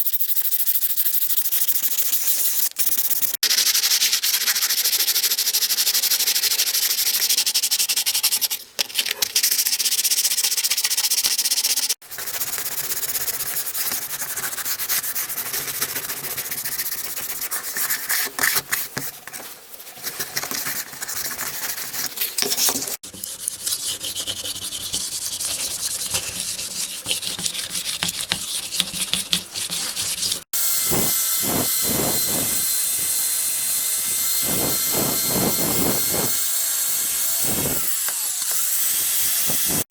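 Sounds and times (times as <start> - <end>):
abrasive sanding: 0.0 - 39.8
power tool whining: 30.6 - 39.8.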